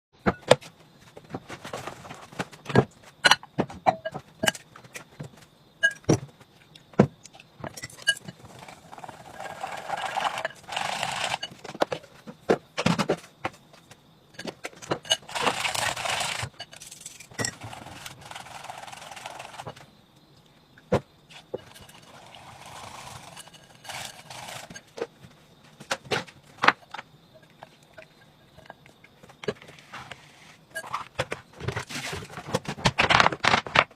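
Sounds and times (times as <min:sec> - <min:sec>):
utensils clicking and knocking: 0:07.8 - 0:12.0, 0:14.4 - 0:19.8
steady hissing noise: 0:15.3 - 0:31.0.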